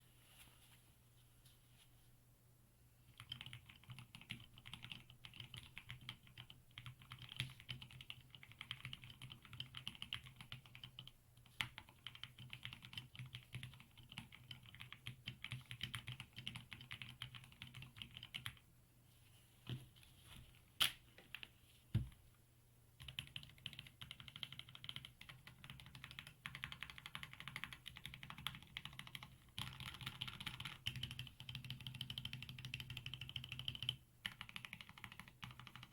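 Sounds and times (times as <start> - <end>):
typing on mechanical keyboard: 3.1 - 18.6, 23.0 - 35.9.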